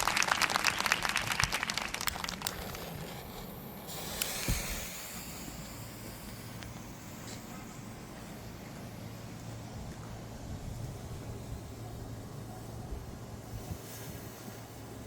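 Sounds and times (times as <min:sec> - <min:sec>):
crackling sputtering clicks: 0:00.1 - 0:10.2
fuse hissing: 0:02.4 - 0:15.0.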